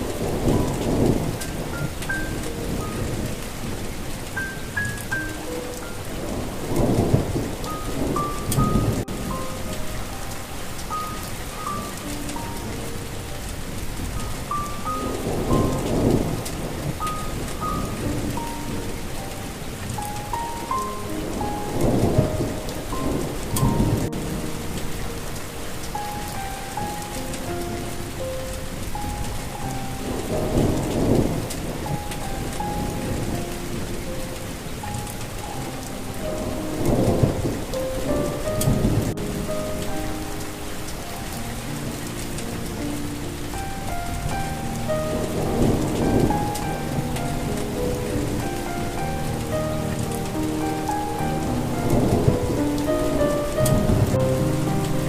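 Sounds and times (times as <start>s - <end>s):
soft single-note melody: 0.0s - 55.0s
steady rain: 0.0s - 55.0s
thunder rumbling: 0.0s - 55.0s.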